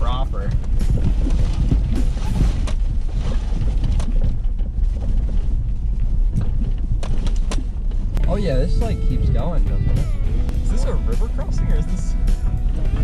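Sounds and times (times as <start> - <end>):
vehicle body knocks and rattles: 0.0 - 8.2
engine and tyres rumbling: 0.0 - 13.0.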